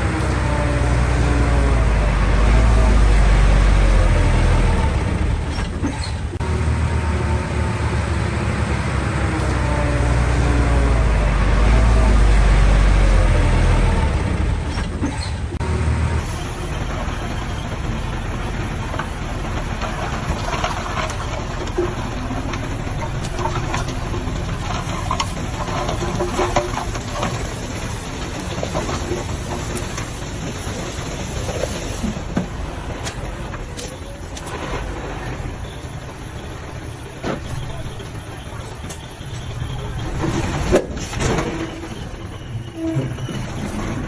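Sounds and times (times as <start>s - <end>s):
heavy diesel machinery rumbling: 0.0s - 44.0s.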